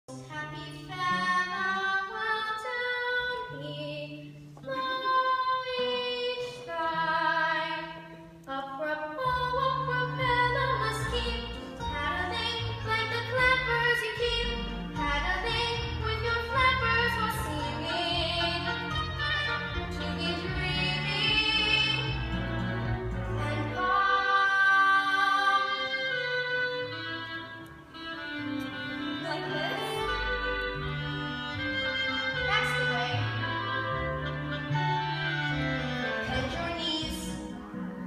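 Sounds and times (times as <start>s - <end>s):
musical accompaniment: 0.1s - 38.0s.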